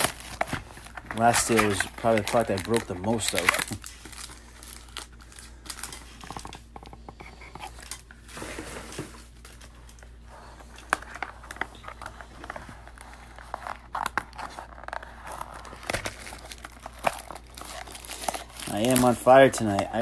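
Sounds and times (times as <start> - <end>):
plastic packaging crinkling and tearing: 0.0 - 6.8, 7.6 - 20.0
trading cards being handled: 0.0 - 20.0.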